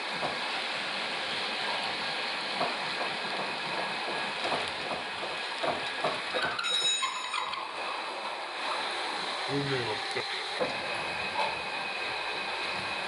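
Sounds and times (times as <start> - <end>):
metal lathe running: 0.1 - 13.0
high-pitched squeal: 6.4 - 7.9.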